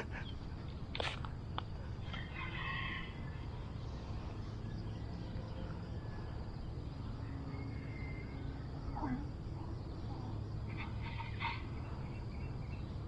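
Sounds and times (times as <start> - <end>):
low outdoor rumble: 0.0 - 13.0
rooster crowing: 2.0 - 3.6, 7.2 - 8.8.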